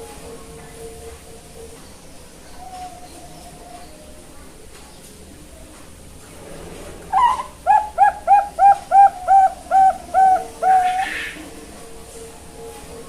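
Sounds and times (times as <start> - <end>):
dove cooing: 7.0 - 13.0.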